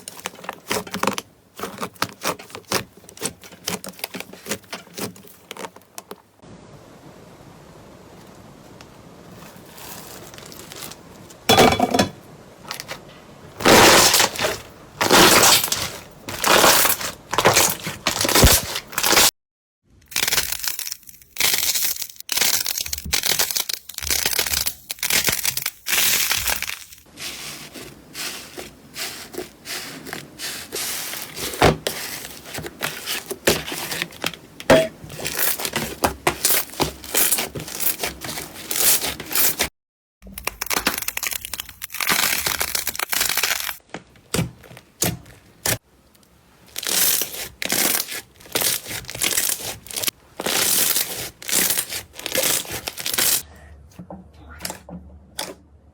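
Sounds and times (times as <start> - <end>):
crunchy slime crackling when squeezed: 13.6 - 19.3, 20.0 - 27.1, 40.2 - 45.8, 46.6 - 53.4.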